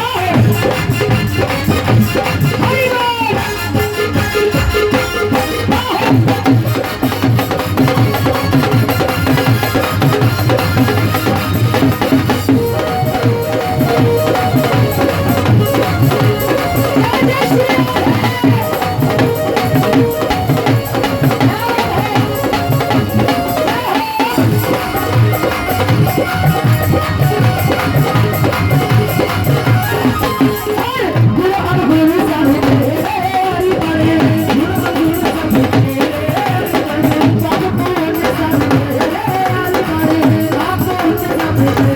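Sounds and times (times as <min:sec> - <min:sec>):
drums keeping busy beat: 0:00.0 - 0:41.9
wavering melody line: 0:12.5 - 0:31.2.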